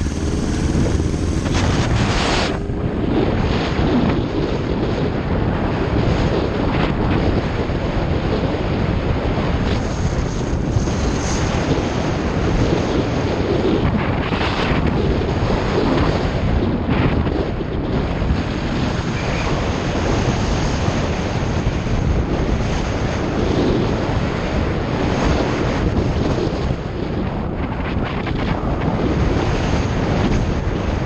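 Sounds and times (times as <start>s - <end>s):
road noise: 0.0s - 7.0s
wind buffeting microphone: 0.0s - 31.0s.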